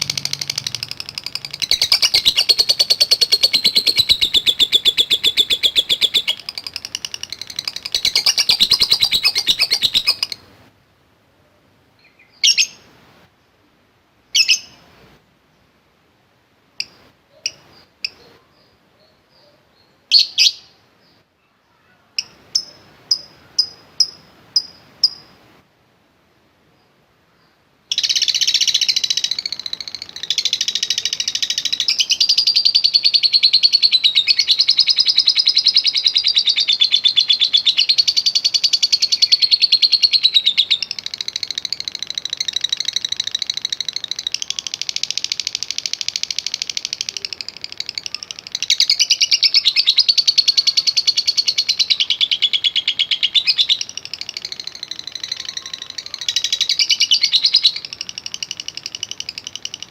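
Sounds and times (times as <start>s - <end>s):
lovebird calling: 0.0s - 10.5s, 12.0s - 12.9s, 14.3s - 14.8s, 16.8s - 25.4s, 27.9s - 59.9s.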